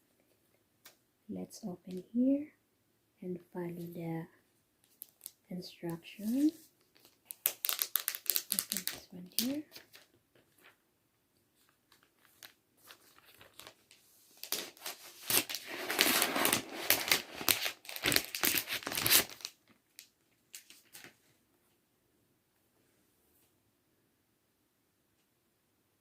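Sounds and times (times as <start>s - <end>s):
packaging wrap crinkling and tearing: 4.8s - 5.4s, 6.1s - 10.1s, 11.6s - 21.2s.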